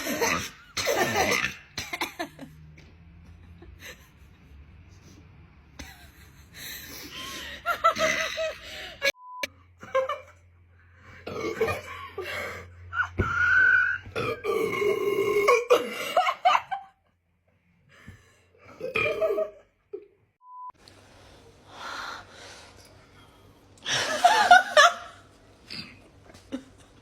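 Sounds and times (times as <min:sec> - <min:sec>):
loud drawn-out burps: 0:00.0 - 0:01.8, 0:11.2 - 0:11.9, 0:14.2 - 0:15.8.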